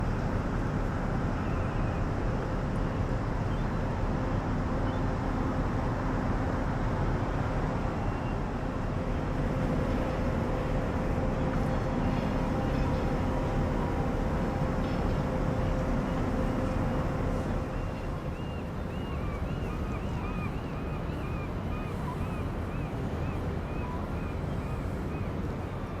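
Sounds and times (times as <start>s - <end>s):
distant traffic rumble: 8.5s - 20.2s.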